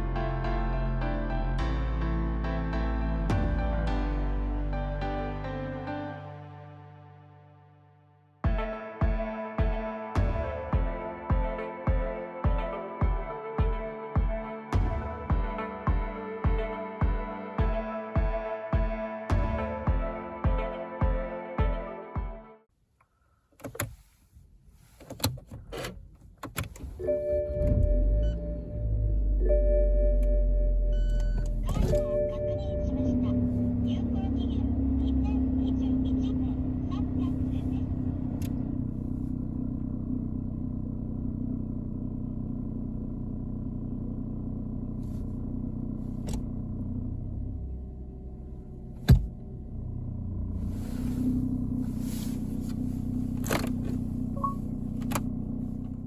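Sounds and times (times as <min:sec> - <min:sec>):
car engine starting and idling: 0:24.8 - 0:56.0.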